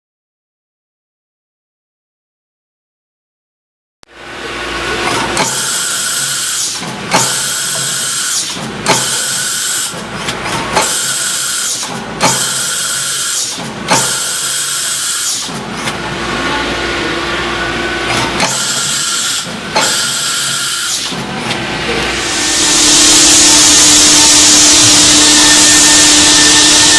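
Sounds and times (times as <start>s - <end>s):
machine tool cutting metal: 4.7s - 16.7s, 17.9s - 26.9s.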